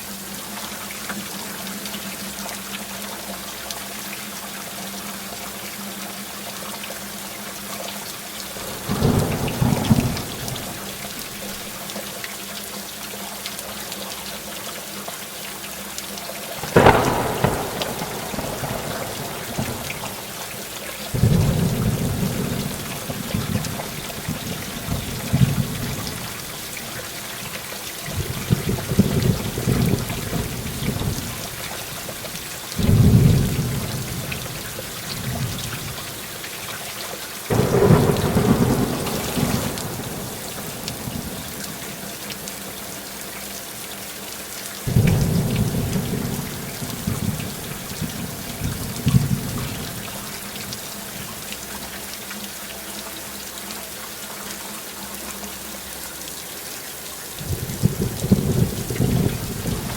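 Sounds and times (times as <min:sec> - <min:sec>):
heavy rain falling: 0:00.0 - 0:59.9
thunder rumbling and cracking: 0:08.6 - 0:11.7, 0:16.6 - 0:27.2, 0:28.0 - 0:36.0, 0:37.5 - 0:41.8, 0:44.9 - 0:50.3, 0:57.4 - 0:59.9.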